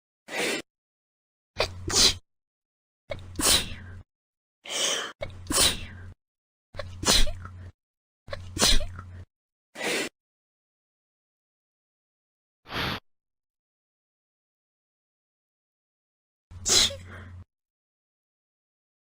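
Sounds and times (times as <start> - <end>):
people sneezing: 1.6 - 2.2, 7.0 - 7.4, 8.6 - 8.9, 16.7 - 17.1.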